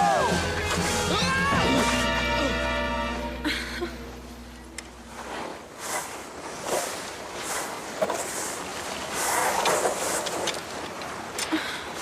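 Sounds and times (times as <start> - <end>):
skis swishing over snow: 5.1 - 11.2.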